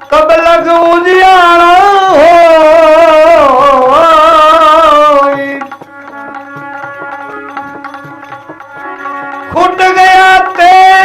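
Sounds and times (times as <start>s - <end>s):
person singing with vibrato: 0.0s - 5.9s, 9.5s - 11.0s
held instrumental notes: 0.0s - 11.0s
tabla strokes: 1.0s - 11.0s.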